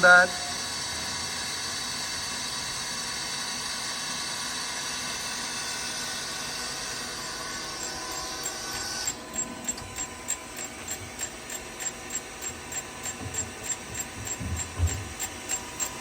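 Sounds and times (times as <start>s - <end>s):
high whining machine tones: 5.1s - 16.0s
machine hiss: 5.6s - 16.0s.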